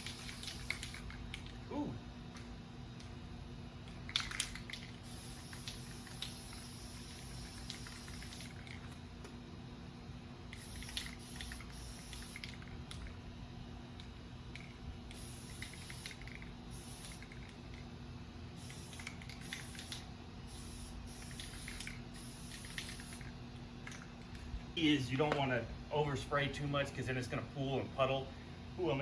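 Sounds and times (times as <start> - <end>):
aerosol spray can hissing: 0.0 - 1.2, 4.4 - 8.9, 10.6 - 12.6, 15.1 - 17.4, 18.6 - 23.3.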